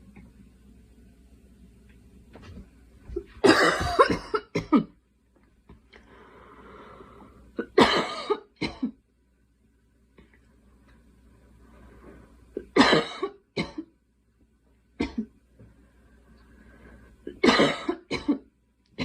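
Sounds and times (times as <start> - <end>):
girl coughing: 3.4 - 4.9, 7.6 - 9.0, 12.6 - 13.8, 17.4 - 18.4
faint breath: 5.9 - 7.6, 11.5 - 12.5, 15.7 - 17.2.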